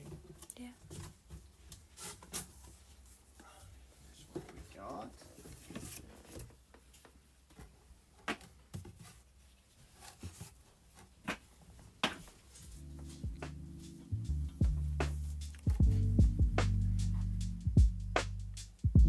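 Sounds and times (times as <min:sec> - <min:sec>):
music: 0:12.6 - 0:19.0.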